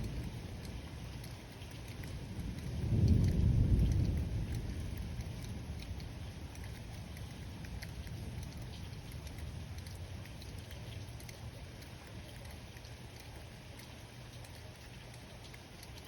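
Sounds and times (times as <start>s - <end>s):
low rumble of thunder: 0.0s - 12.0s
drops ticking close by: 0.0s - 16.0s
rain falling: 0.0s - 16.0s.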